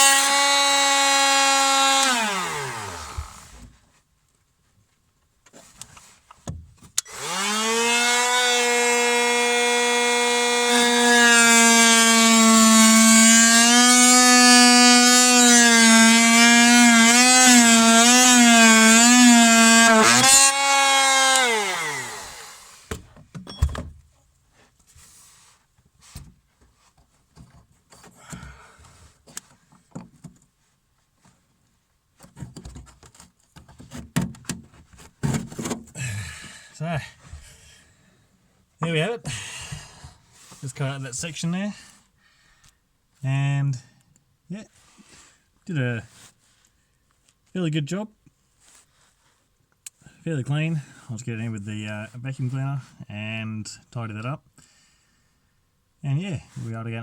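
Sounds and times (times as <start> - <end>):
oscillating multi-tool buzzing: 0.0 - 3.5, 7.0 - 22.9.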